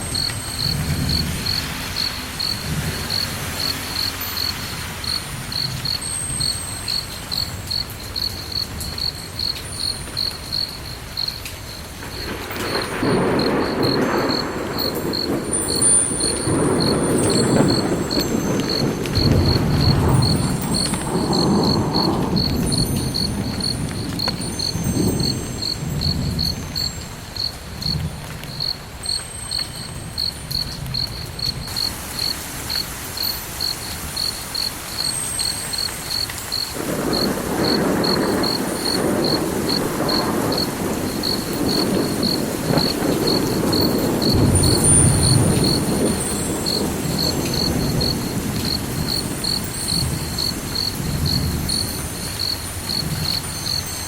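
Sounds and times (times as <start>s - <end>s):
cricket chirping: 0.0s - 54.0s.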